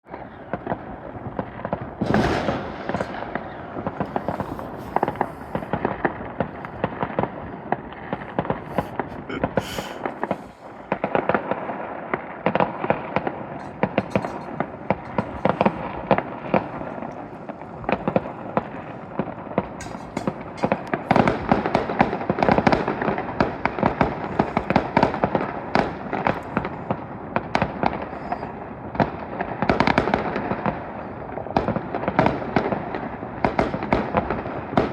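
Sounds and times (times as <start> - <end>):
fireworks crackling and banging: 0.1 - 34.9.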